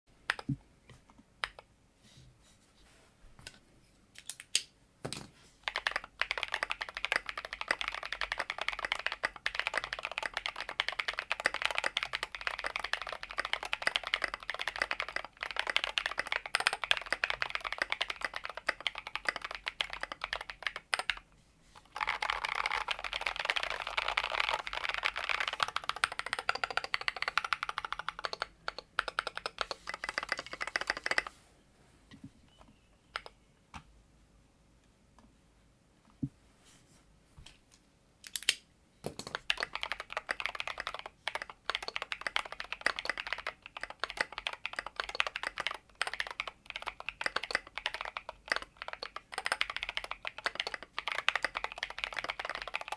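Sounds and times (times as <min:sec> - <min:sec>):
typing on mechanical keyboard: 0:05.6 - 0:21.2, 0:21.8 - 0:31.3, 0:39.1 - 0:52.9.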